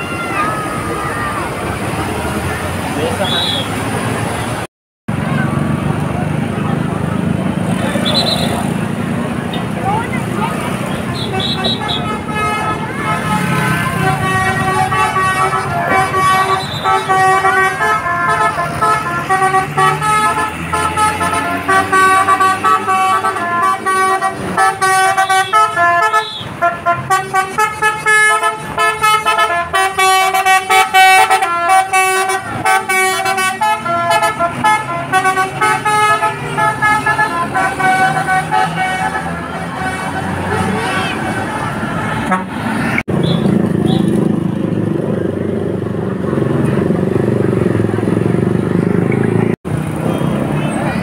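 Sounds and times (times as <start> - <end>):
bus engine running: 0.0 - 51.0
multi-tone air horn melody: 11.0 - 44.2.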